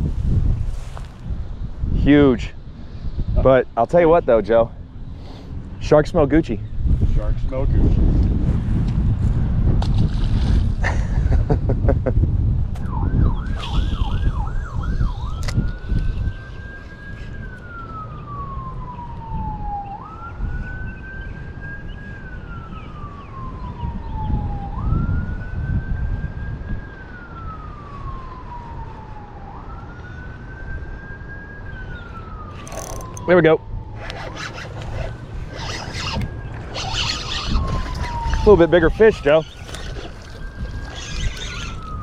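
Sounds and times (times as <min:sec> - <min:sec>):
electronic siren yelp and wail: 0:12.8 - 0:42.0.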